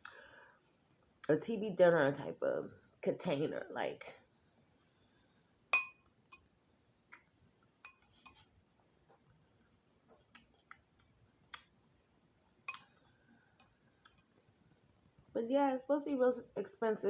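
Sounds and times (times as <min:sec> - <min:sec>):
spoon clinking against a dish: 0:05.8 - 0:06.4, 0:07.8 - 0:08.4.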